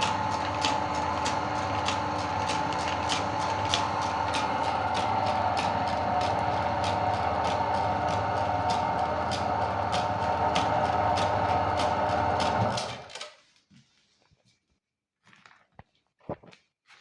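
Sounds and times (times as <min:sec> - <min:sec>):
electric meat grinder running: 0:00.0 - 0:13.1.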